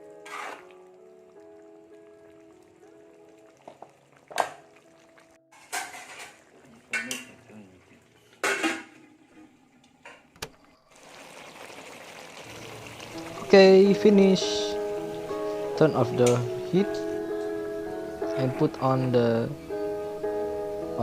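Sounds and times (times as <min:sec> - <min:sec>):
faint background music: 0:00.0 - 0:09.0, 0:12.6 - 0:21.0
utensil scraping a cooking pan: 0:00.1 - 0:00.8, 0:05.5 - 0:07.4.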